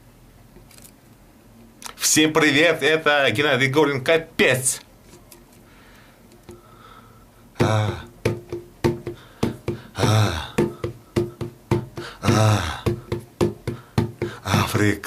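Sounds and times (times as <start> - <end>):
jar drummed by hand: 7.6 - 14.5.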